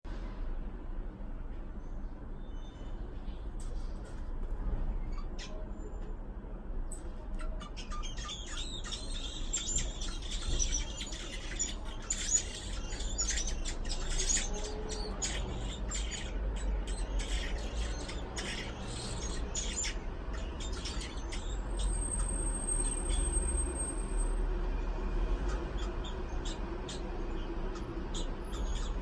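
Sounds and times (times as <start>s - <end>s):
nestling birds squawking: 7.3s - 23.8s, 25.3s - 29.0s.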